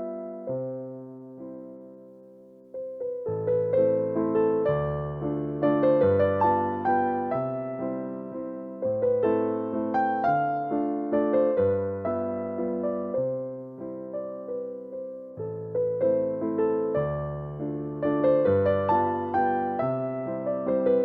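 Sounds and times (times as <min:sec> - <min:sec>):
gentle electric piano chords: 0:00.0 - 0:21.0.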